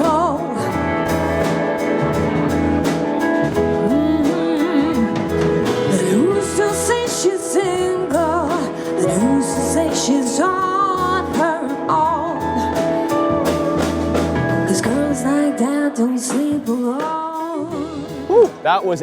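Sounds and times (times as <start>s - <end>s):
song with sung vocal: 3.7s - 13.2s, 14.6s - 18.8s.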